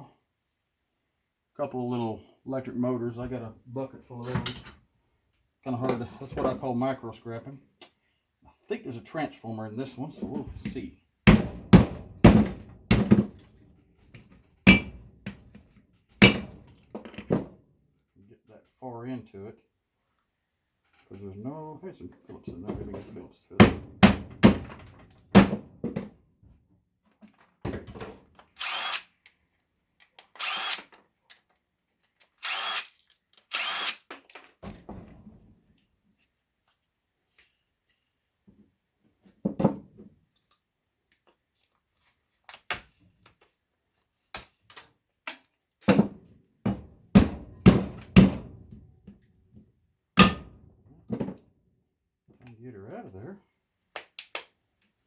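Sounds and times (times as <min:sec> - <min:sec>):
cordless drill spinning: 0:28.6 - 0:29.2, 0:30.3 - 0:30.9, 0:32.4 - 0:34.0.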